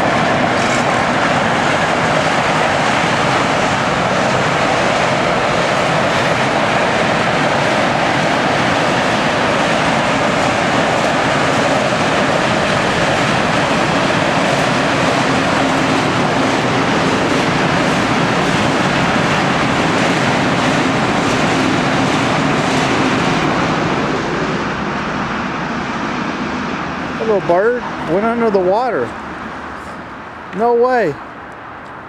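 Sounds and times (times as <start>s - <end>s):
river water rushing: 0.0s - 32.0s.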